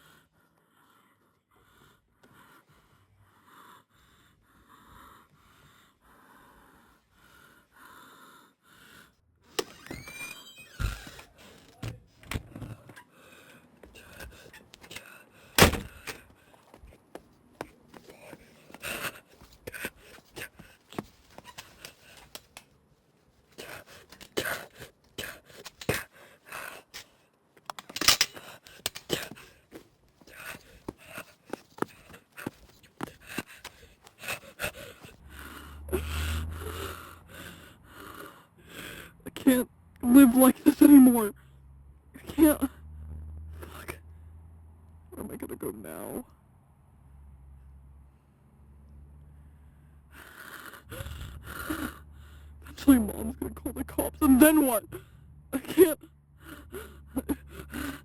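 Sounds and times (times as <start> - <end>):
person gasping for breath: 28.0 - 39.2, 50.1 - 52.8, 56.4 - 58.0.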